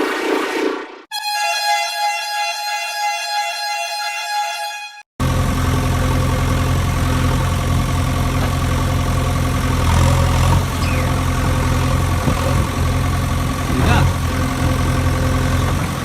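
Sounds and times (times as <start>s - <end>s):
engine idling: 5.2s - 16.0s.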